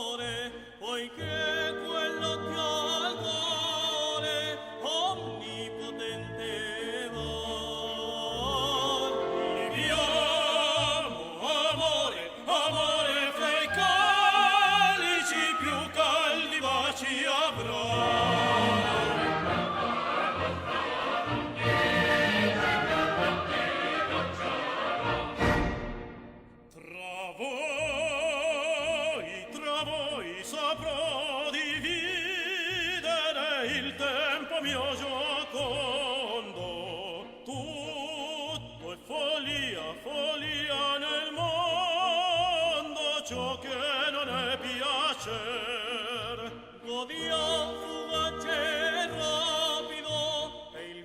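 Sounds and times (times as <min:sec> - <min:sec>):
solo operatic voice singing: 0:00.0 - 0:19.9
orchestral accompaniment: 0:01.2 - 0:26.8, 0:27.8 - 0:50.6.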